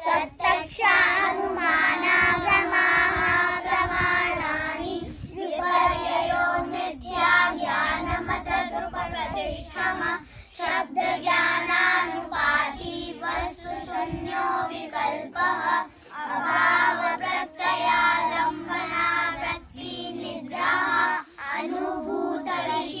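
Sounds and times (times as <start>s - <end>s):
children singing in unison: 0.0s - 23.0s.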